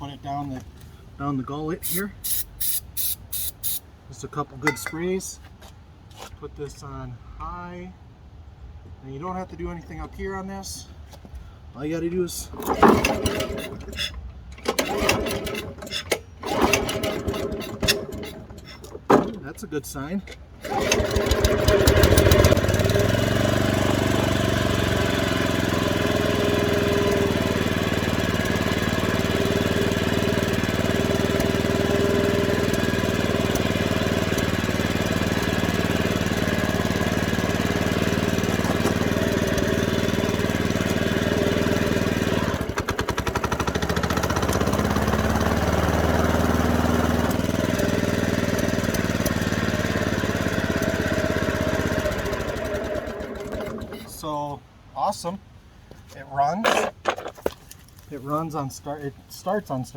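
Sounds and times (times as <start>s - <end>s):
lawn mower engine running: 1.8s - 3.8s, 4.7s - 5.0s, 12.5s - 19.4s, 20.3s - 54.2s.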